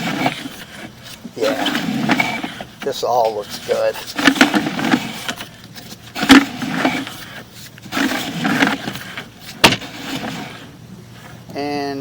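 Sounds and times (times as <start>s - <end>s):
cable scraping and rattling in pipe: 0.0s - 11.4s.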